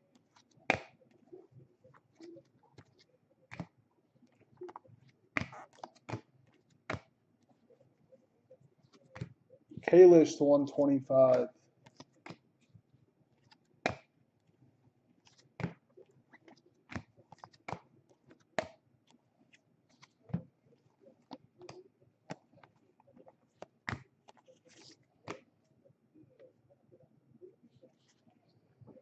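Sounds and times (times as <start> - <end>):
trading cards clicking and snapping: 6.9 - 7.1.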